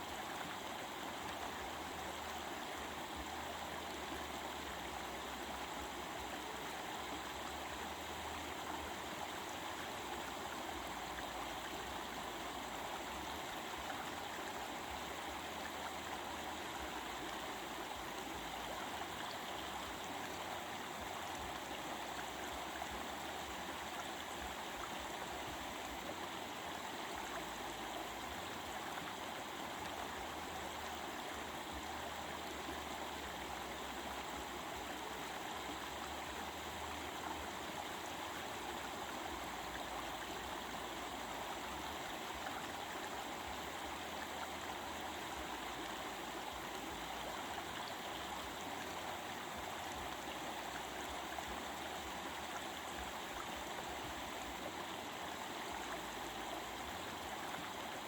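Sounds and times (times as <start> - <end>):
stream babbling: 0.0 - 58.0.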